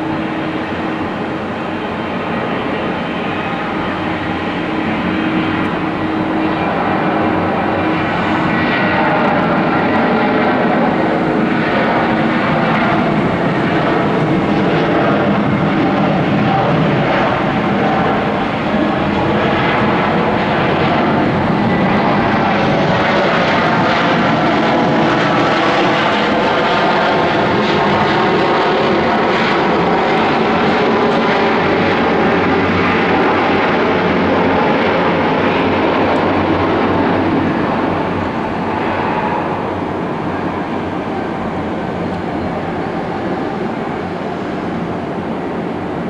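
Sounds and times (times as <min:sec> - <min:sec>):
faint whining tones: 0:00.0 - 0:23.5
jet engines running: 0:00.0 - 0:46.0.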